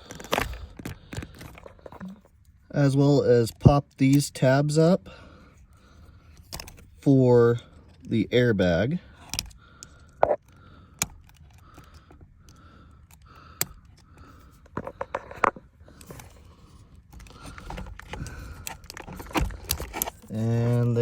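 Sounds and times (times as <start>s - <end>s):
plastic tabs clicking and scraping: 0.0s - 2.5s, 6.3s - 7.0s, 9.1s - 21.0s.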